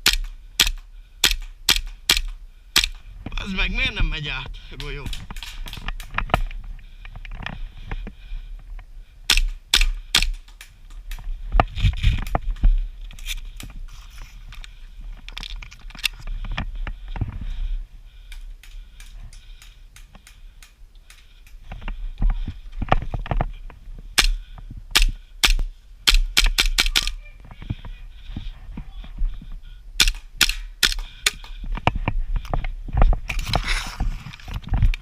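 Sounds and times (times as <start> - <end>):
airsoft gun cracks: 0.0 - 3.0, 9.3 - 11.2, 24.2 - 24.4, 25.0 - 27.1, 30.0 - 31.5
gear rustling and scraping: 10.7 - 17.7, 31.7 - 35.0.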